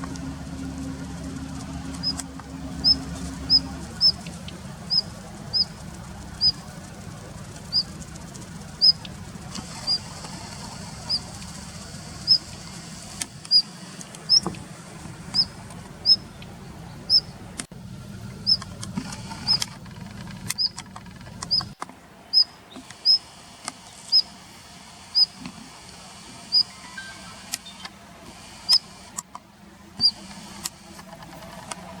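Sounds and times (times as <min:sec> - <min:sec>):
low steady rumble: 0:00.0 - 0:32.0
bird giving sharp calls: 0:02.0 - 0:06.7, 0:08.8 - 0:11.3, 0:12.2 - 0:13.7, 0:15.3 - 0:16.3, 0:21.5 - 0:23.2.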